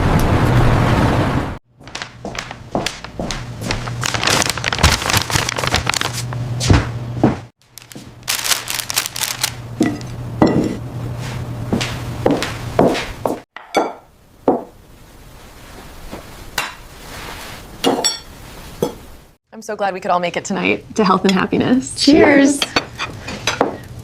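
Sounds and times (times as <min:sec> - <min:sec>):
dishes and cutlery clinking: 0:22.6 - 0:24.0.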